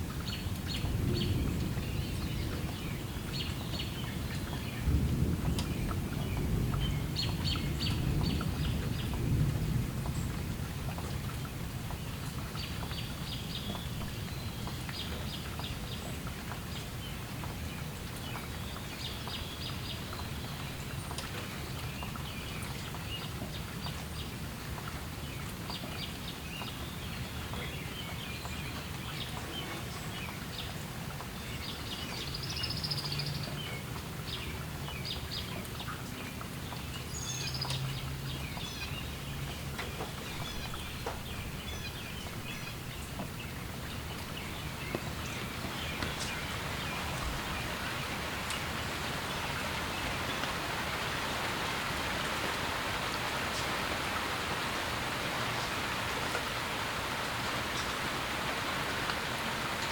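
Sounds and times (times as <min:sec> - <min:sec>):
light rain: 0:00.0 - 0:59.9
small birds chirping: 0:31.5 - 0:59.9.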